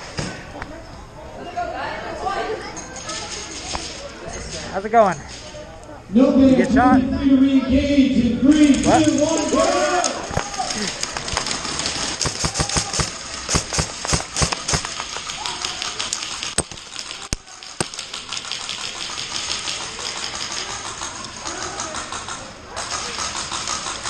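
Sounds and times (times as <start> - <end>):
airsoft guns firing: 8.6 - 24.0.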